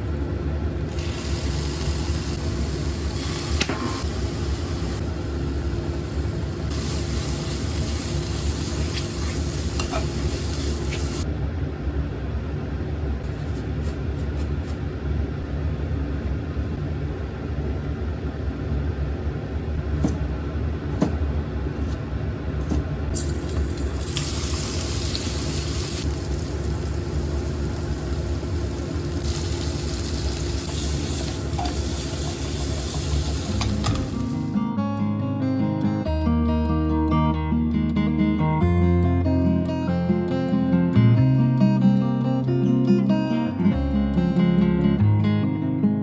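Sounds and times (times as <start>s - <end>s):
food sizzling in a pan: 0.8s - 11.2s, 23.1s - 34.6s.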